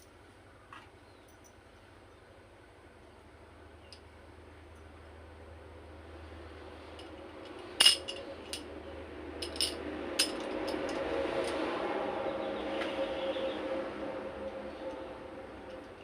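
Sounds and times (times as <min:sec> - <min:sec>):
metallic clinks of small parts: 0:07.0 - 0:08.7, 0:09.4 - 0:11.6.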